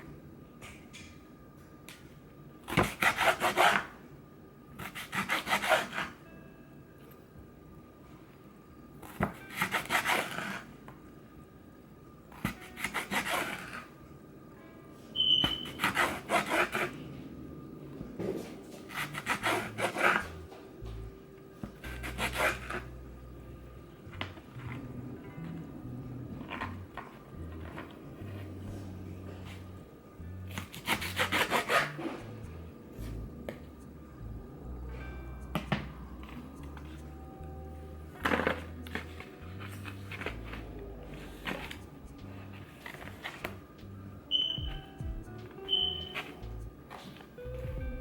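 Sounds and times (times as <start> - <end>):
short high beep: 15.2 - 15.8, 44.3 - 45.0, 45.7 - 46.2
knife cutting on wooden board: 18.9 - 20.4, 21.7 - 22.9, 30.5 - 32.2.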